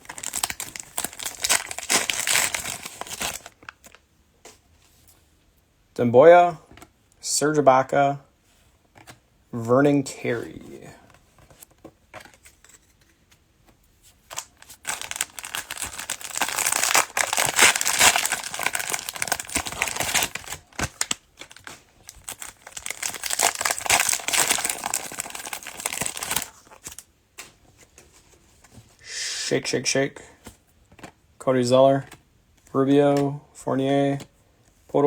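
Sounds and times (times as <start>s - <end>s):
cellophane wrapper crinkling and tearing: 0.0s - 4.0s, 14.3s - 27.1s.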